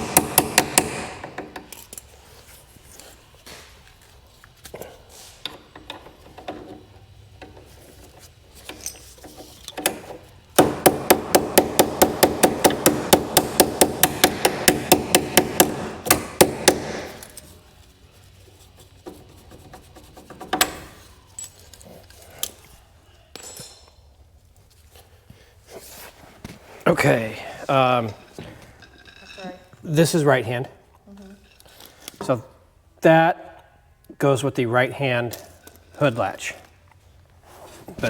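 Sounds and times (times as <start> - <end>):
fast sharp knocks: 0.0 - 1.6, 10.6 - 17.3.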